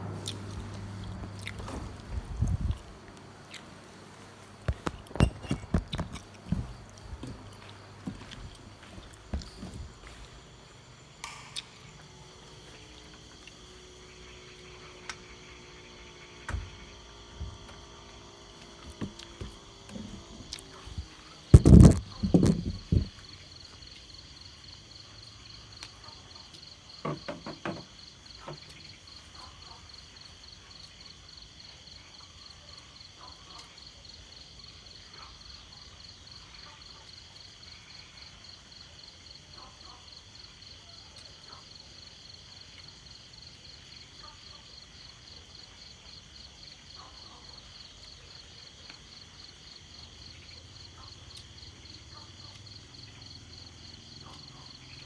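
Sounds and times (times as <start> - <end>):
insects trilling: 0.0 - 55.0
soft knocks: 4.2 - 12.9.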